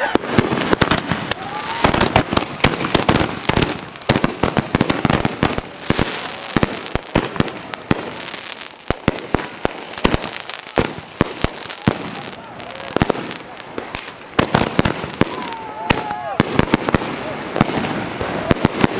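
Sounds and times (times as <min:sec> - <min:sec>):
fireworks bangs and crackles: 0:00.0 - 0:18.9.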